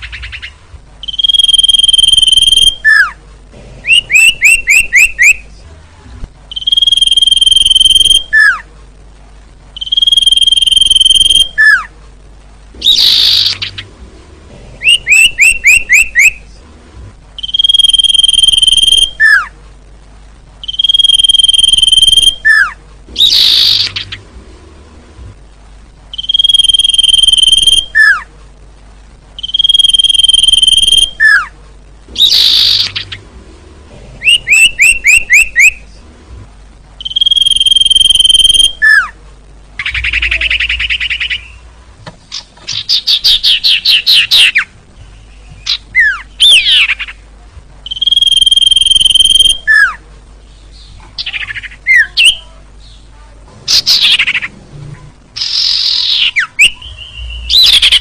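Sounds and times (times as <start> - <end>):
bird calls whistles and trills: 0.0 - 3.2, 3.9 - 5.4, 6.5 - 8.6, 9.8 - 11.9, 12.8 - 13.8, 14.8 - 16.4, 17.4 - 19.5, 20.6 - 24.2, 26.1 - 28.3, 29.4 - 31.5, 32.2 - 33.2, 34.2 - 35.8, 37.0 - 39.1, 42.4 - 47.2, 47.9 - 50.0, 55.4 - 58.0.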